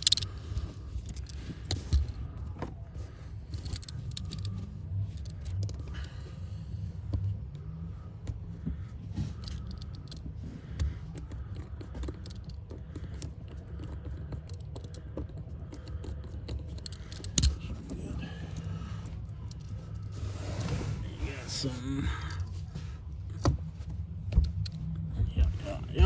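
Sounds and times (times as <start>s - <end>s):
low steady hum: 0.0s - 26.0s
clicks and taps of car parts: 8.2s - 19.7s.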